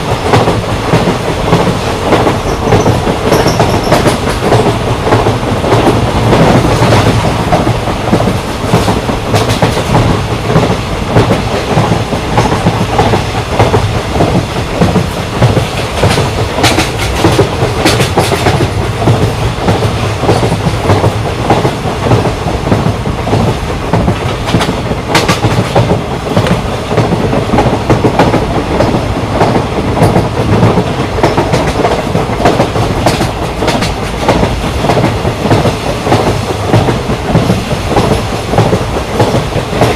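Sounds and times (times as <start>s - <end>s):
train coach rumbling: 0.0s - 39.9s.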